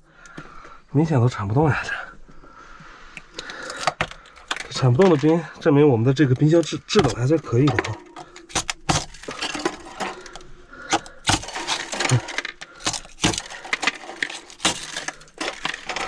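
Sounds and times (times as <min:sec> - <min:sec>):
plastic scraper scraping ice: 0:06.5 - 0:16.0.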